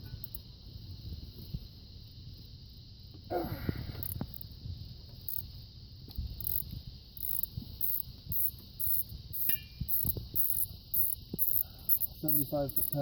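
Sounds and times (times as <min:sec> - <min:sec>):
ratchet wrench clicking: 0:06.4 - 0:13.0.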